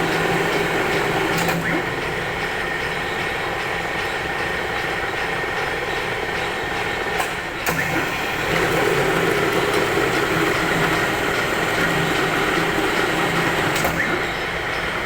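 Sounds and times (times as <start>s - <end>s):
lathe humming: 7.7s - 15.0s.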